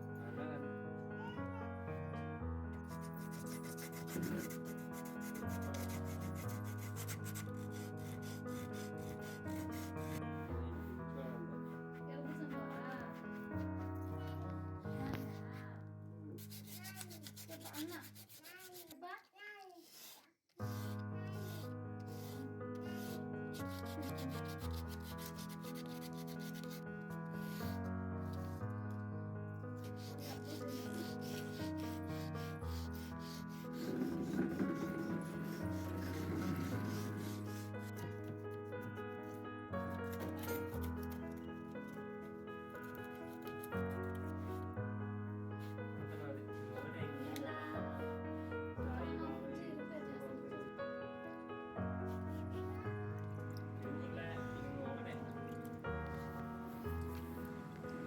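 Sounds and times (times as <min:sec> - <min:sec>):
background music: 0:00.0 - 0:18.3, 0:20.6 - 0:58.0
sandpaper rubbing on filler: 0:03.0 - 0:10.2, 0:16.4 - 0:26.8, 0:29.9 - 0:38.2
sustained chord music: 0:53.3 - 0:58.0.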